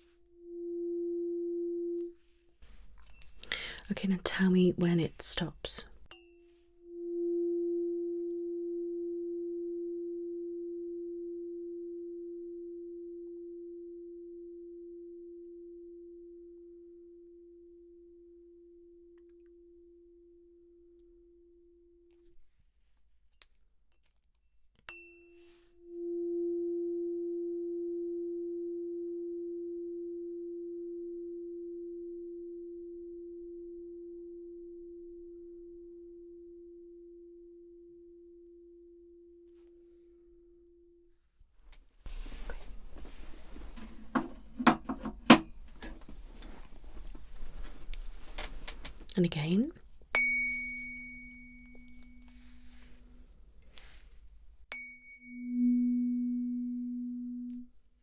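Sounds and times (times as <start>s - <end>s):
tuning fork ringing: 0.0s - 3.8s, 6.0s - 22.3s, 24.9s - 41.2s, 50.1s - 53.8s, 54.7s - 57.7s.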